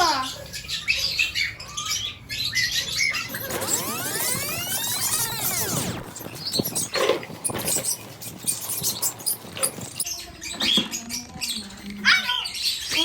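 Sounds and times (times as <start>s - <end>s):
parrots chirping: 0.0s - 13.0s
scratchy clicks and rustling: 3.3s - 12.0s.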